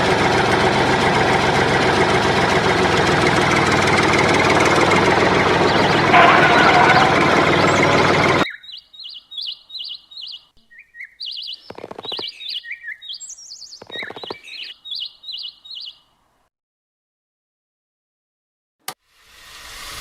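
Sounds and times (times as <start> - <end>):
loud motor running: 0.0 - 8.4
birds chirping: 2.9 - 16.2.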